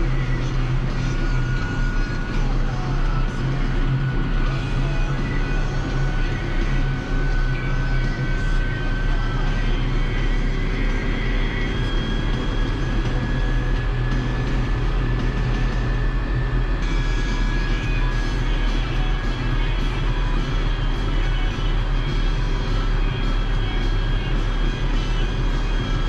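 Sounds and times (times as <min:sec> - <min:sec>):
high whine: 0:00.0 - 0:26.0
tractor diesel engine running: 0:00.0 - 0:26.0.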